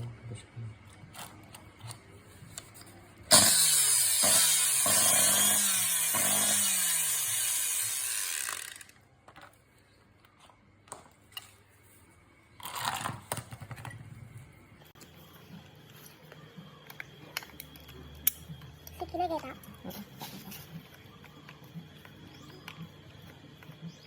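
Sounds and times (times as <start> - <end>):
angle grinder with rough snoring noise: 3.3 - 8.9.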